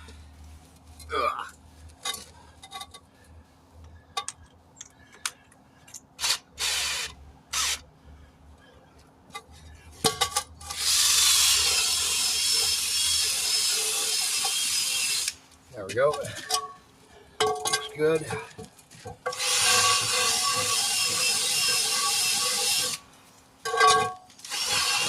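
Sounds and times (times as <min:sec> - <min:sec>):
drill spinning wire brush on rim: 0:10.6 - 0:15.4, 0:19.3 - 0:23.0, 0:24.4 - 0:25.0.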